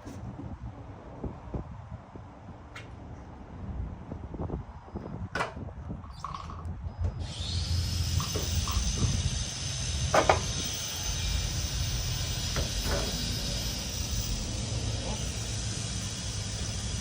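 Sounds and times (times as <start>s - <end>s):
motor whining: 6.2s - 17.0s.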